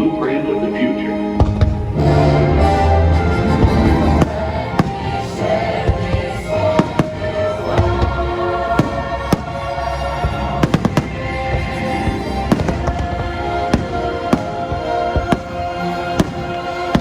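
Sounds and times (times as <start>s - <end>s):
music of held notes: 0.0s - 17.0s
fireworks cracking and banging: 3.4s - 17.0s.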